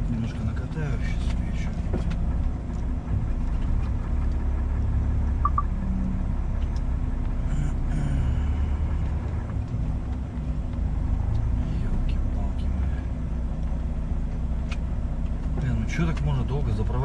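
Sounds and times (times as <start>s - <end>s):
truck diesel engine running: 0.0s - 17.0s
quick beeps: 5.4s - 5.7s.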